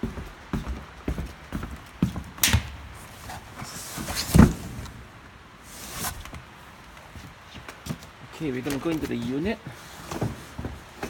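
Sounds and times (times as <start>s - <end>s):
heavy thump: 4.2s - 5.1s.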